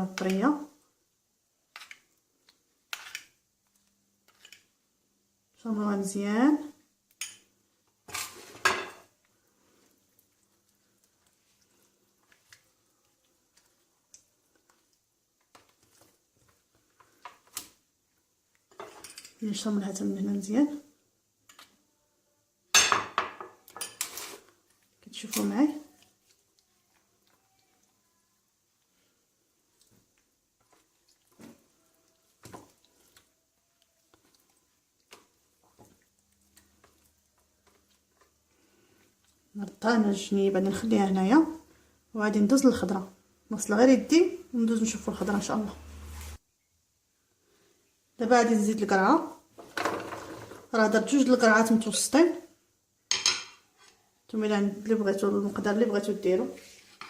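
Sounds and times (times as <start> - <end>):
wet squishing and patting: 9.8 - 18.7, 24.4 - 28.0, 28.7 - 39.8
soft knocks and squishes: 29.7 - 33.4.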